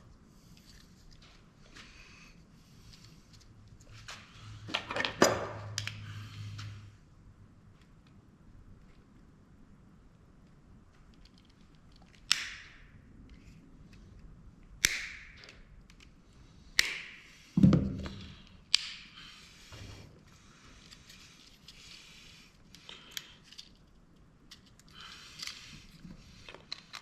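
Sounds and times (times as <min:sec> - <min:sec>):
light clicks and handling: 0:22.7 - 0:27.0.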